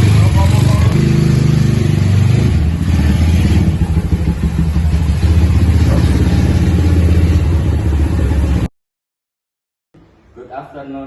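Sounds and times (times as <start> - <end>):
motorcycle engine running: 0.0 - 8.7.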